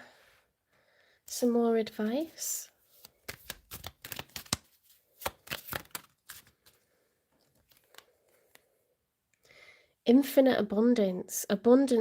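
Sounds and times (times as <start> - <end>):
cards being shuffled: 1.9 - 6.8, 7.4 - 8.6.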